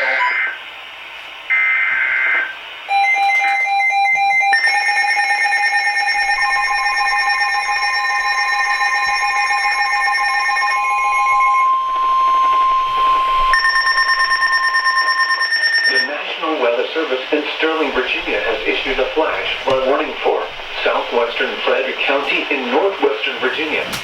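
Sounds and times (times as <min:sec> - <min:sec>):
two-tone attention signal: 0:02.9 - 0:16.1, 0:17.8 - 0:22.4
warbling digital header tones: 0:04.6 - 0:16.1, 0:17.8 - 0:22.8.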